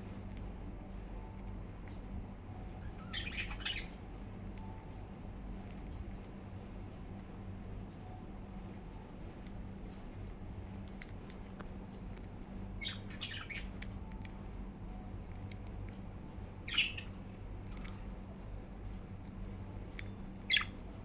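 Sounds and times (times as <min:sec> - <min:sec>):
steady low hum: 0:00.0 - 0:21.0
budgerigars chirping: 0:02.8 - 0:04.0, 0:12.8 - 0:13.9, 0:16.6 - 0:17.2, 0:20.5 - 0:20.8.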